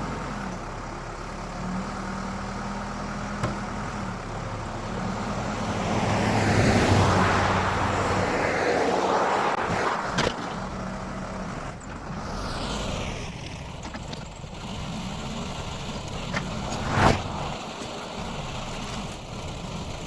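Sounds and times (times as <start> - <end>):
vehicle engine running: 10.6 - 20.0.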